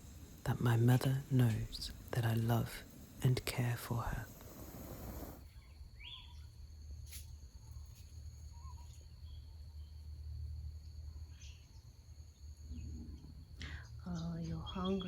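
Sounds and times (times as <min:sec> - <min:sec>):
high insect trill: 0:00.0 - 0:15.0
short bird chirps: 0:05.5 - 0:06.5.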